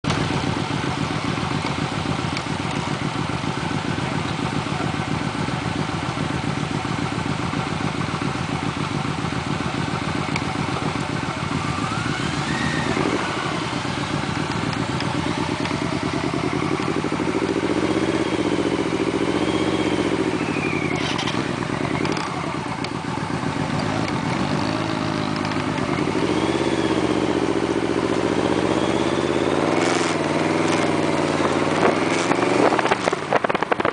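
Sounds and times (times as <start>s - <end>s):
motorcycle engine running: 0.0s - 33.9s
wind noise: 31.4s - 33.9s.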